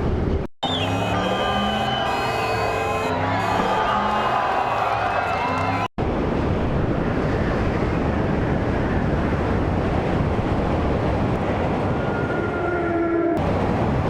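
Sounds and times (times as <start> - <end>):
strong wind roaring: 6.0 - 14.0
wind buffeting microphone: 6.0 - 14.0.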